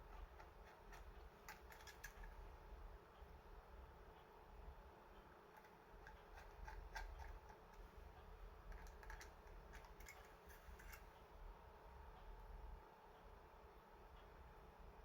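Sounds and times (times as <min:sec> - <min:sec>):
light clicks and taps: 0:00.0 - 0:02.4, 0:08.7 - 0:11.2
low steady hum: 0:00.0 - 0:15.0.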